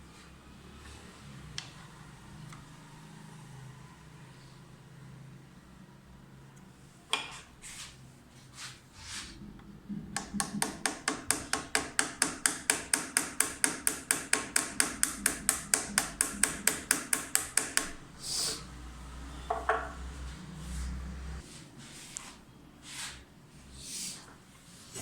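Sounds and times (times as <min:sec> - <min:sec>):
rapid sharp tapping: 0:10.0 - 0:17.9.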